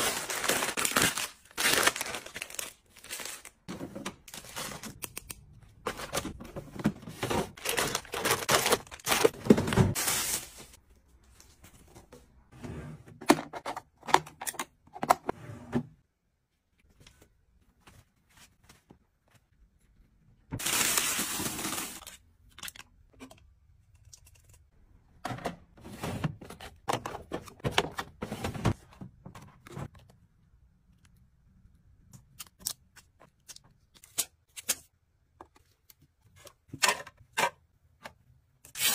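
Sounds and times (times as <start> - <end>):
packaging crinkling and tearing: 0.0 - 3.6, 7.6 - 10.7
items being handled and set down: 3.7 - 5.0, 5.8 - 12.4, 25.2 - 30.1.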